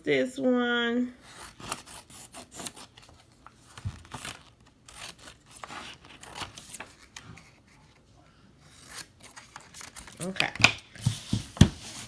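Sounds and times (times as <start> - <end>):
paper rustling and crinkling: 1.3 - 10.4, 11.0 - 12.0
scissors snipping paper: 4.0 - 7.2.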